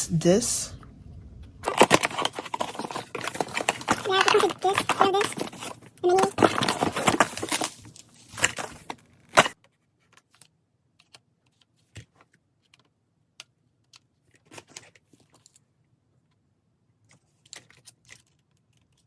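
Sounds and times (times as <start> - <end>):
computer parts clattering: 1.6 - 9.5.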